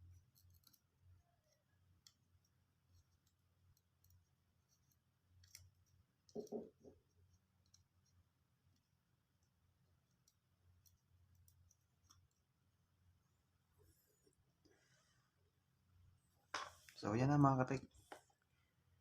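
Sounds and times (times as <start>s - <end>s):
small tools clicking: 0.3s - 0.8s, 5.4s - 5.7s.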